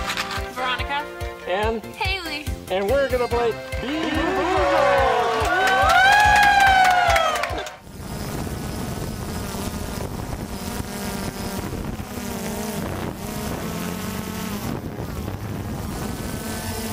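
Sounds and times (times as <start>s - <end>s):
drone propellers buzzing: 7.8s - 16.9s.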